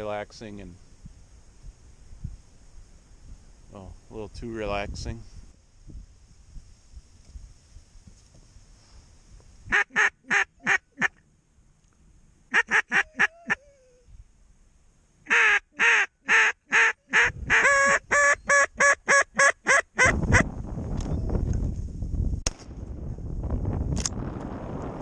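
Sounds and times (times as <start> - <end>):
duck quacking: 9.7 - 11.2, 12.5 - 13.6, 15.3 - 20.4.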